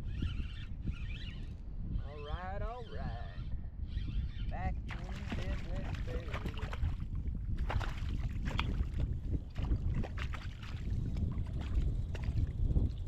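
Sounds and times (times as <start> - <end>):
wind buffeting microphone: 0.0 - 13.0
water slapping kayak hull: 4.9 - 13.0.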